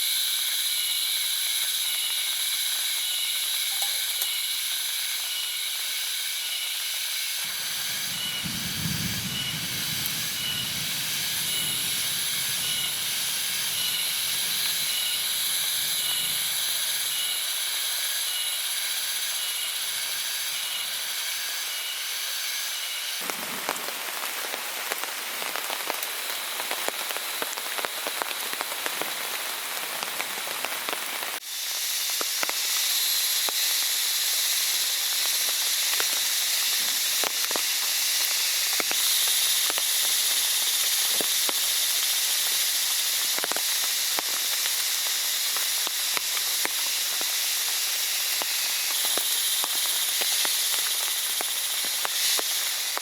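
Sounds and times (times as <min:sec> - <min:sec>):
rain hissing: 0:06.6 - 0:53.0
raindrops striking nearby: 0:07.5 - 0:16.7, 0:23.2 - 0:31.4.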